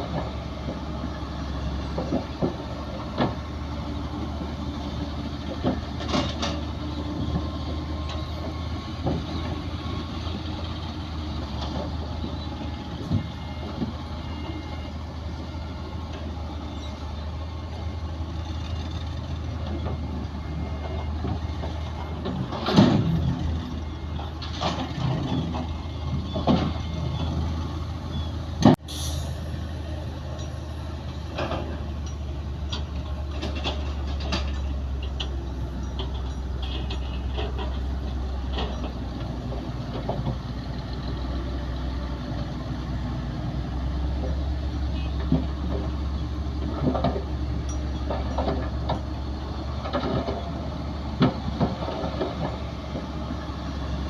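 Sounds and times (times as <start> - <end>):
diesel machinery droning: 0.0 - 54.0
metallic clanks and knocks: 5.5 - 9.6, 20.8 - 23.4, 31.3 - 40.5, 46.6 - 50.6.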